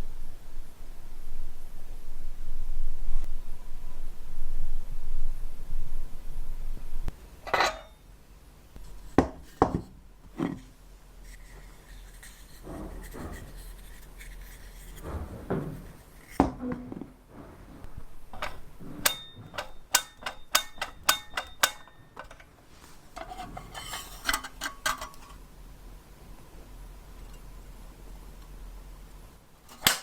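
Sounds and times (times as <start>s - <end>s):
hard objects knocking and tapping: 9.2s - 10.7s, 12.1s - 17.2s, 18.4s - 22.5s.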